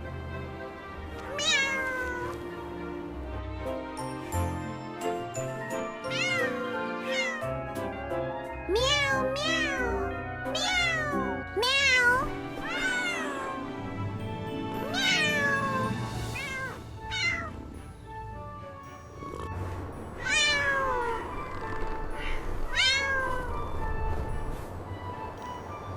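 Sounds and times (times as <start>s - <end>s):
soft background music: 0.0s - 25.9s
cartoon kittens meowing: 1.3s - 2.3s, 6.0s - 7.5s, 8.7s - 13.6s, 14.8s - 17.5s, 20.2s - 21.4s, 22.1s - 23.6s.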